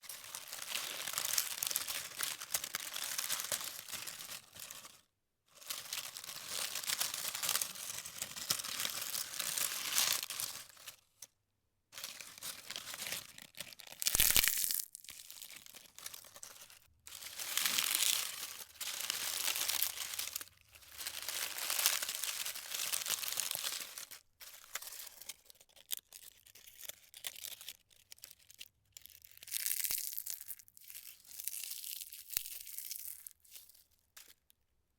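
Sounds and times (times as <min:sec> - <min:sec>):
dry leaves crunching: 0:00.1 - 0:05.0, 0:05.6 - 0:10.8, 0:12.0 - 0:24.2.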